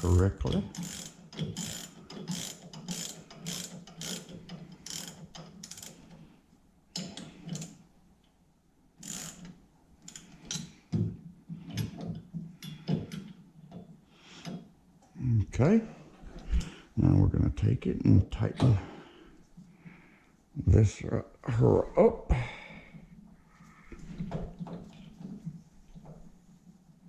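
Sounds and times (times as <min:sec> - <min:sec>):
socket ratchet clicking: 0:00.5 - 0:06.0, 0:09.0 - 0:10.7.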